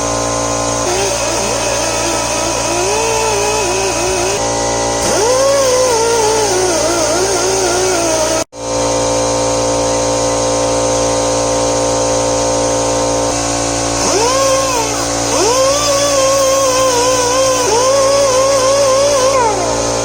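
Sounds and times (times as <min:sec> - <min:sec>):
die grinder wire brush on steel: 0:00.0 - 0:08.5, 0:13.3 - 0:20.0.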